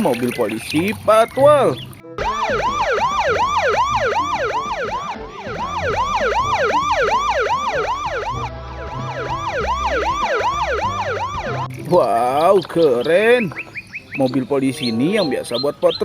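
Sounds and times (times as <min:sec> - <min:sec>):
police siren yelping: 0:01.4 - 0:11.8.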